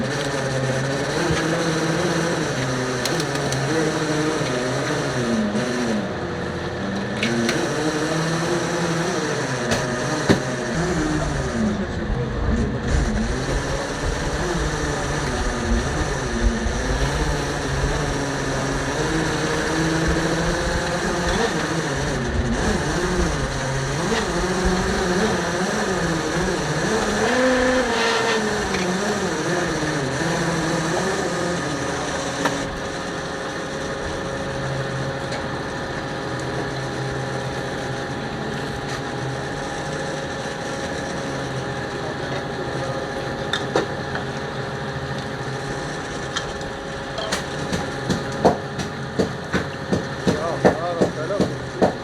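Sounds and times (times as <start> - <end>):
boat engine running: 0.0 - 52.0.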